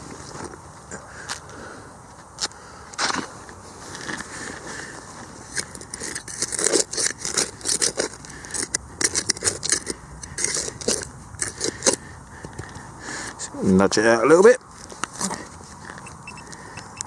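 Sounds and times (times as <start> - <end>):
digging tool scraping soil: 5.2 - 12.1.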